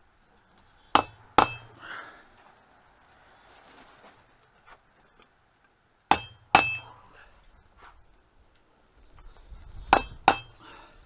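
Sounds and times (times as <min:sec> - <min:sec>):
hammer striking steel on anvil: 0:00.9 - 0:01.8, 0:06.1 - 0:06.9, 0:10.0 - 0:10.6.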